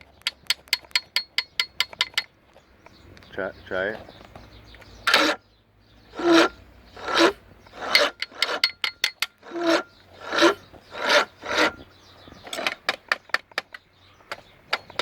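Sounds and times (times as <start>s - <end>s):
rasping scraping strokes: 5.1s - 5.4s, 6.1s - 12.8s.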